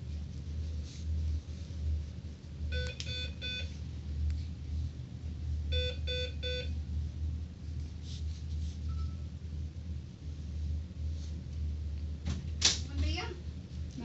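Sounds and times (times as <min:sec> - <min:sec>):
steady low hum: 0:00.0 - 0:14.0
electronic alarm beeping: 0:02.7 - 0:03.7, 0:05.7 - 0:06.7.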